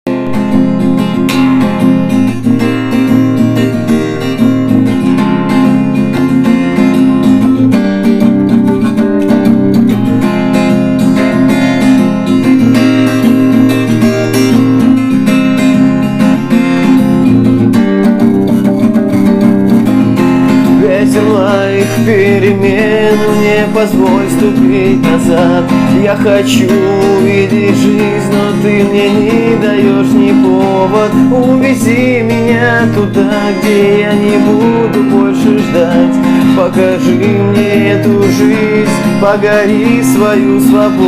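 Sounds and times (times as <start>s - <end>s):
acoustic guitar strumming chords: 0.1s - 41.0s
person singing: 20.5s - 41.0s.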